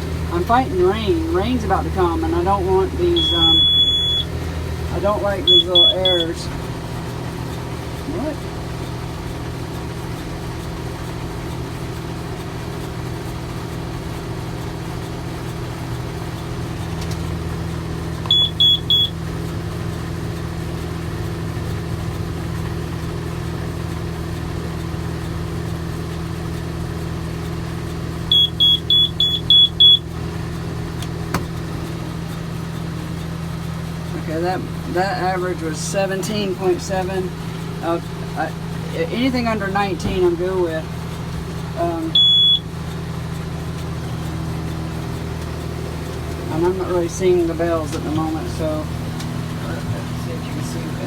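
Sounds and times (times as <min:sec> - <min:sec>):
tractor engine running: 0:00.0 - 0:51.0
short high warning beeps: 0:03.0 - 0:04.4, 0:05.0 - 0:06.5, 0:18.3 - 0:19.2, 0:28.3 - 0:30.1, 0:42.0 - 0:42.8.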